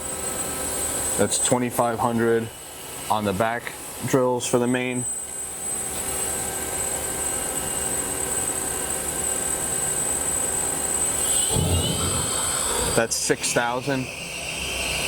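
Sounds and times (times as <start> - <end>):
lathe spindles whining: 10.7 - 15.0.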